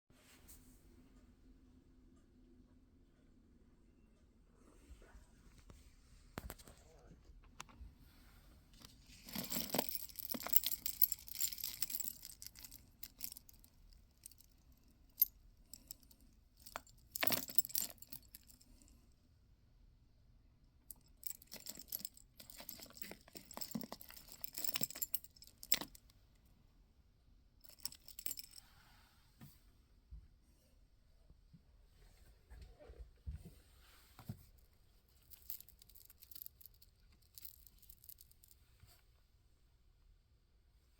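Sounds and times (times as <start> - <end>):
beads clinking and jangling: 8.8 - 18.9, 20.9 - 26.1, 27.6 - 28.6, 35.1 - 38.6.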